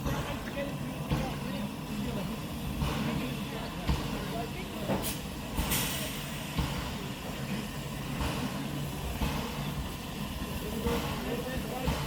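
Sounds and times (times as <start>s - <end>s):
steam locomotive rumble and hiss: 0.0s - 12.0s.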